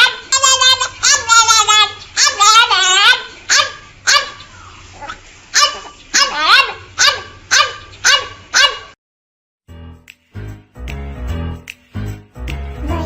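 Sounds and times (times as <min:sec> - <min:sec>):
puppy yapping: 0:00.0 - 0:09.0
music: 0:09.7 - 0:13.0.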